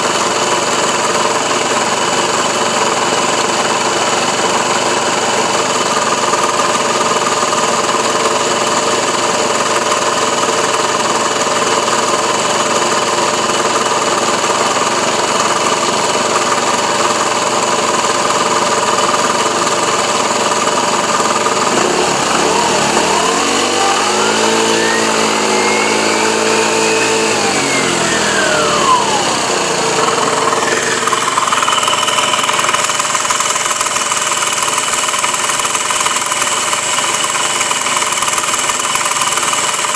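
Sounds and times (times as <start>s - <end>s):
engine rattle: 0.0s - 39.9s
scooter engine idling and revving: 0.0s - 39.9s.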